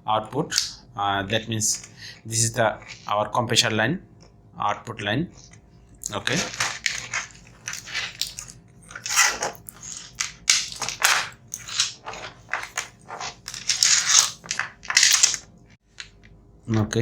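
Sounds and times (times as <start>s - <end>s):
wires crunching and rustling: 1.6s - 3.2s, 5.3s - 16.3s.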